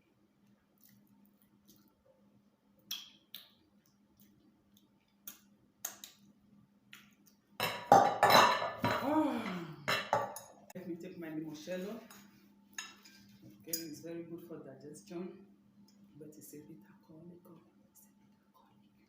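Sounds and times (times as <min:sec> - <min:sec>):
cutlery and dishes clinking: 0:07.6 - 0:09.0.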